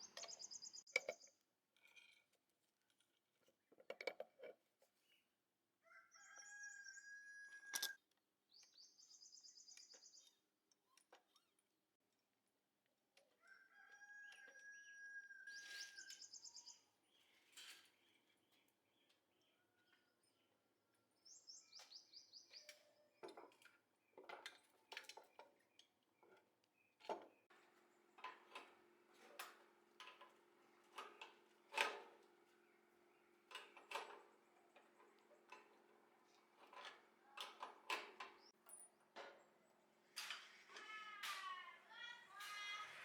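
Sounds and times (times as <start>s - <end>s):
faint metal clinks and knocks: 33.5s - 41.7s.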